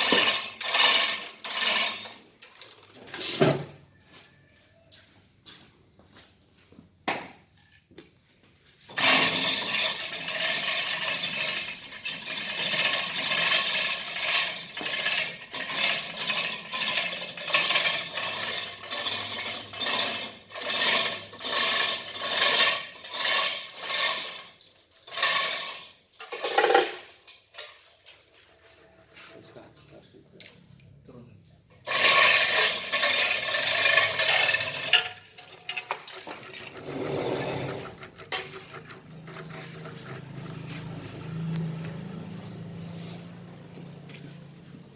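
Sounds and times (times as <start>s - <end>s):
metal scraping and clinking: 0.0s - 3.6s, 8.9s - 28.9s, 31.8s - 43.2s.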